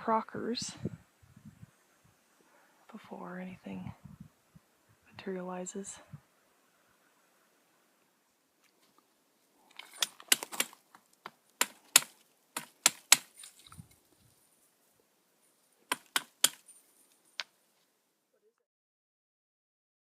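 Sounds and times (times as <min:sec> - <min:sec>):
sharp clicks and taps: 0:15.9 - 0:16.6.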